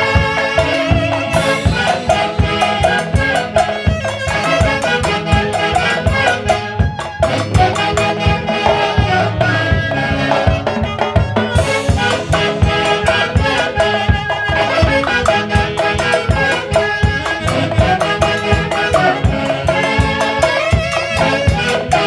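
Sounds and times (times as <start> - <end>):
shaken percussion: 0.0 - 9.2
horns: 0.0 - 22.0.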